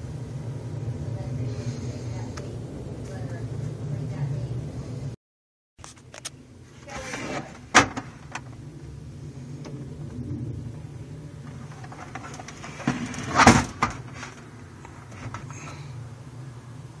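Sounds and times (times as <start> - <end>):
steady low hum: 0.0 - 5.2, 5.8 - 17.0
knocks and rustling: 11.4 - 15.8.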